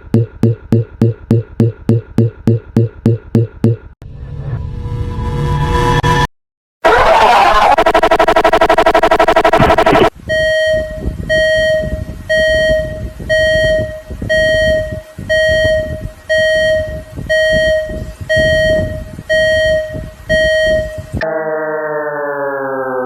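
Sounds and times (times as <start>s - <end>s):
falling electronic tone: 4.2s - 10.1s, 20.5s - 23.0s
electronic alarm beeping: 7.7s - 21.4s.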